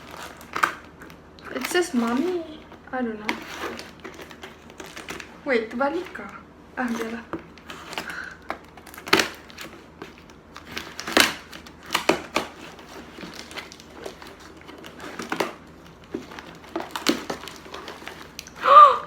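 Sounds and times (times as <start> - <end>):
packaging crinkling and rustling: 0.0 - 18.6.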